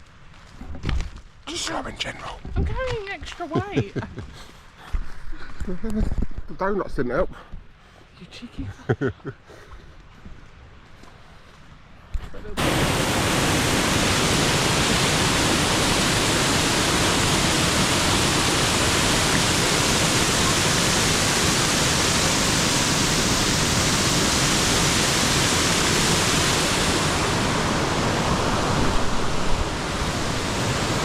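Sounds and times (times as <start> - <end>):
waterfall roaring: 12.6 - 31.0.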